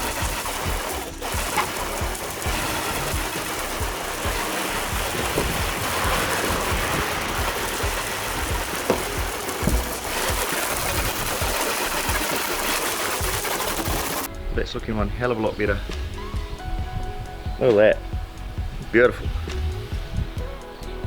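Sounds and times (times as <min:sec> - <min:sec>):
water spraying on bus roof: 0:00.0 - 0:14.3
low knocks: 0:08.5 - 0:10.4.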